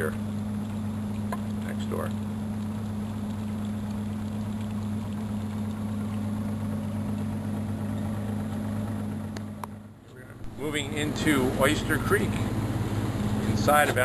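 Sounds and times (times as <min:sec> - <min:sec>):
motorboat engine humming: 0:00.0 - 0:14.0
water hissing: 0:10.4 - 0:14.0.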